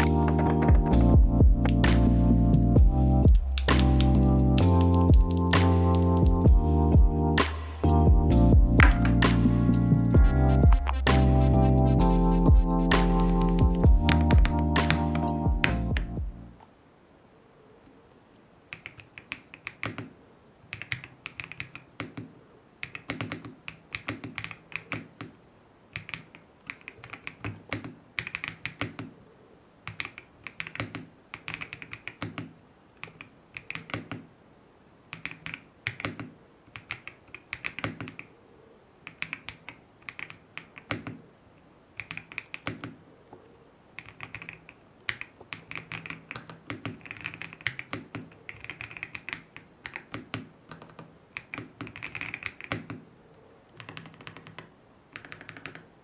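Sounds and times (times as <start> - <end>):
mechanical keyboard key clacks: 44.0 - 53.0.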